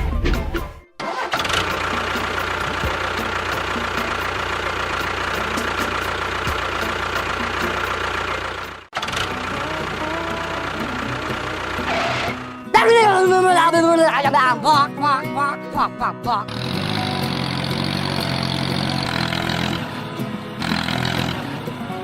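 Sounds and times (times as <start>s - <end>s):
small engine running: 1.0s - 12.6s, 16.4s - 22.0s.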